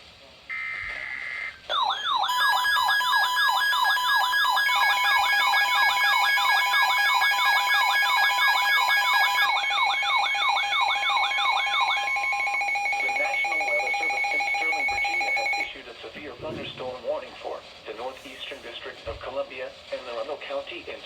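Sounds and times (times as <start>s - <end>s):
falling siren-like alert sweep: 0.5s - 15.7s
steady electronic tones: 9.5s - 15.7s.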